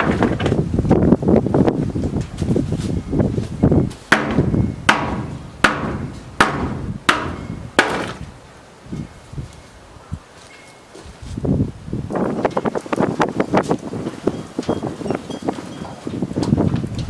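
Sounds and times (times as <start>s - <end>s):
hammer striking wooden boards: 4.1s - 8.3s.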